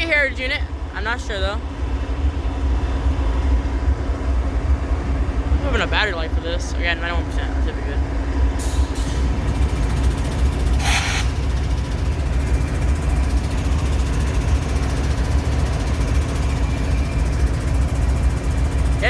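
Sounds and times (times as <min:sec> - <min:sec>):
diesel locomotive engine rumbling: 0:00.0 - 0:19.0
air hiss burst: 0:10.8 - 0:11.4.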